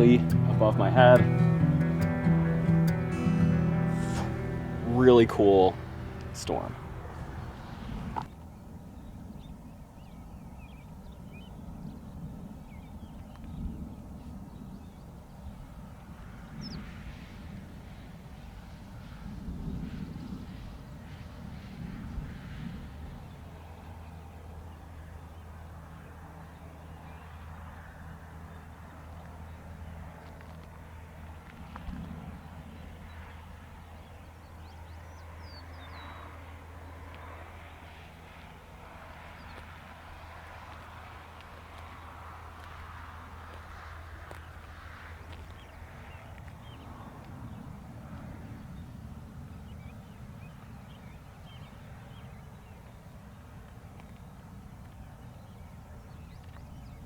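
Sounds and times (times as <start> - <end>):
steady low hum: 0.0 - 8.3
wind rumble on microphone: 2.1 - 25.5, 29.8 - 36.3, 38.8 - 57.0.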